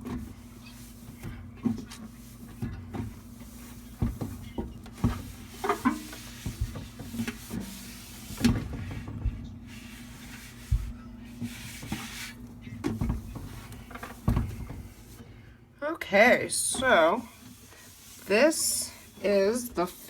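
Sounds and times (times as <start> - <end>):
cloth wiping microwave: 0.0 - 15.5, 16.1 - 20.0
steady low hum: 0.0 - 20.0
rubbing scrapes: 0.3 - 12.4, 16.8 - 20.0.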